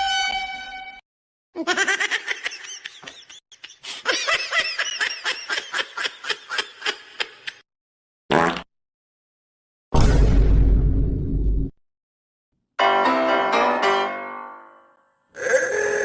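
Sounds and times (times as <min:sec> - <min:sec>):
cartoon snickering laugh: 0:01.6 - 0:07.6.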